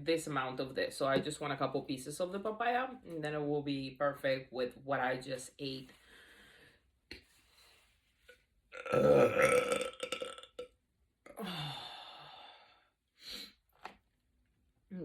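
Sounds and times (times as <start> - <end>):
woman burping: 8.8 - 10.7.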